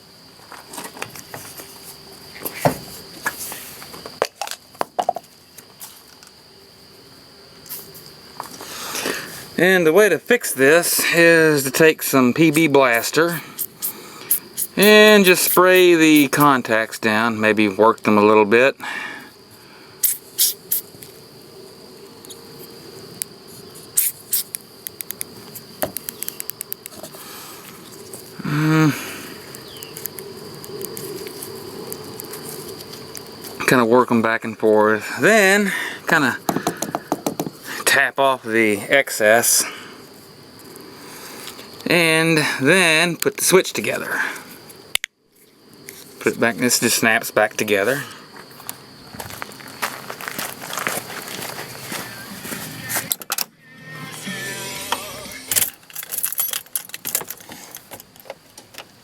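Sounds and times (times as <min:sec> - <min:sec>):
high insect chirp: 0:00.0 - 0:59.0
aerosol spray spurts: 0:13.6 - 0:16.5, 0:20.0 - 0:20.9, 0:24.0 - 0:24.6
faint high whine: 0:50.9 - 0:55.8.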